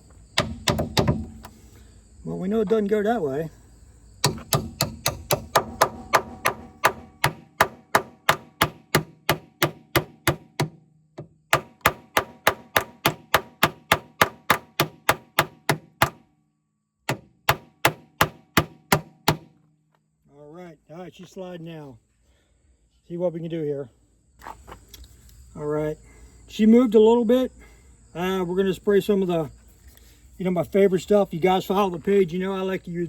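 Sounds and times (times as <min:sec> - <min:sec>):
hammer blows on metal: 0:04.2 - 0:16.2, 0:17.1 - 0:19.5.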